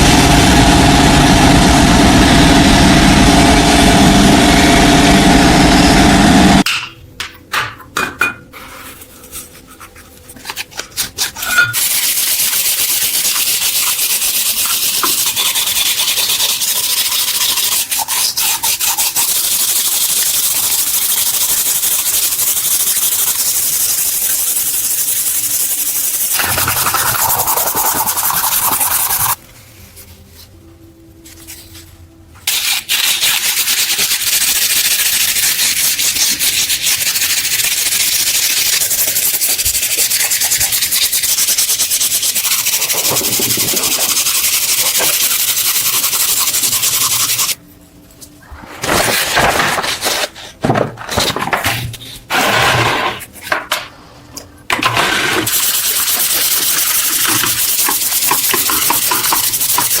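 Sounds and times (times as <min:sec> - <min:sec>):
power tool running: 0:00.0 - 0:06.6
sanding on metal: 0:11.4 - 0:29.4, 0:32.5 - 0:47.6, 0:55.5 - 1:00.0.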